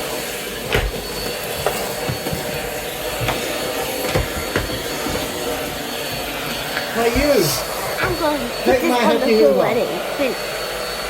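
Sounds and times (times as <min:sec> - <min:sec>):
vacuum cleaner whining: 0:00.0 - 0:11.0
knocks and clatters: 0:00.6 - 0:07.3.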